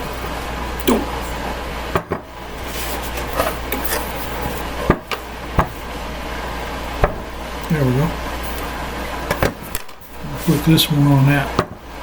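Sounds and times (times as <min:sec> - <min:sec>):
steady low hum: 0:00.0 - 0:12.0
kitchen bowls knocking: 0:01.9 - 0:02.3.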